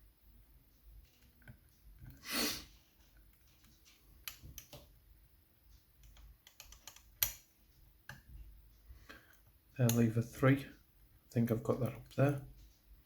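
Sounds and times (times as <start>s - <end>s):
short breathy hiss: 2.2s - 2.8s
lock pick clicks and ticks: 6.0s - 7.5s.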